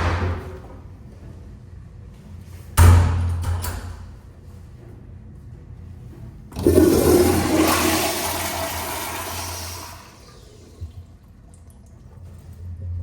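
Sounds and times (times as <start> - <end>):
toilet flushing: 6.5 - 13.0.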